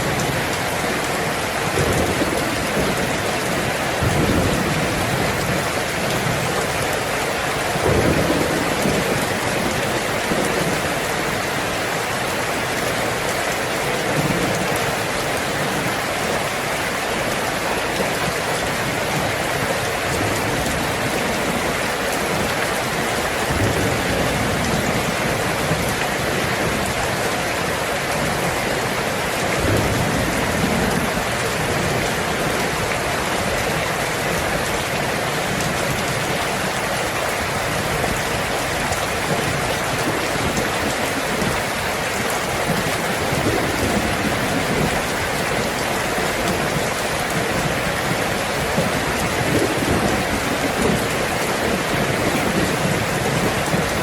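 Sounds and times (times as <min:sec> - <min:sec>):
thunder rolling: 0:00.0 - 0:11.3, 0:23.2 - 0:27.0
rain on a tin roof: 0:00.0 - 0:54.0.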